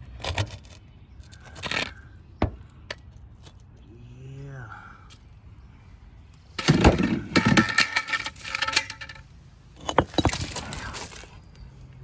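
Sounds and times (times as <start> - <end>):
bricks clattering and clinking: 6.6 - 9.2, 9.8 - 11.5.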